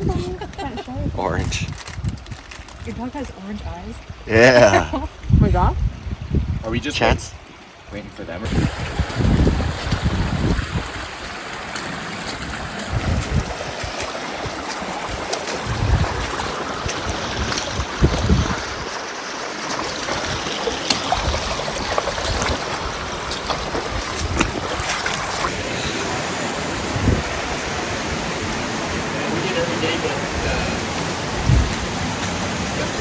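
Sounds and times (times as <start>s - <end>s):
wind buffeting microphone: 0.0s - 7.4s, 8.4s - 19.1s, 19.9s - 33.0s
splashing water: 8.4s - 33.0s.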